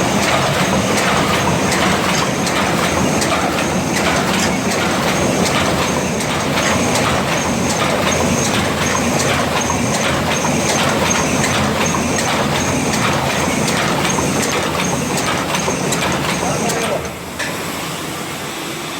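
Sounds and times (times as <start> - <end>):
regular machine clack: 0.0 - 17.2
machine mechanical clatter: 0.0 - 17.6.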